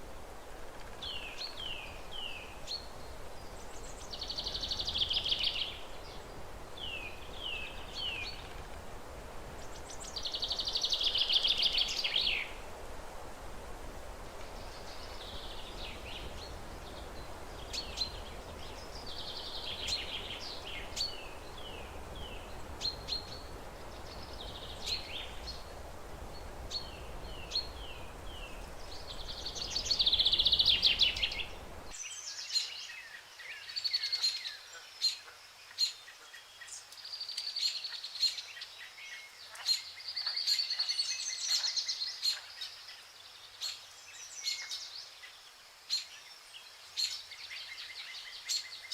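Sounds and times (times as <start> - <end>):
birds chirping: 1.0 - 12.7, 14.3 - 33.0.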